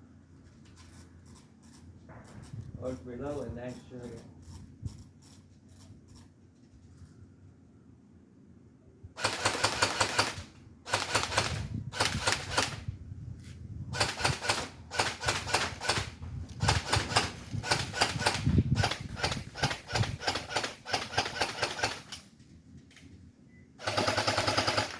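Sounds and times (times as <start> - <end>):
toy gun firing clicking shots: 9.2 - 12.8, 23.8 - 24.9.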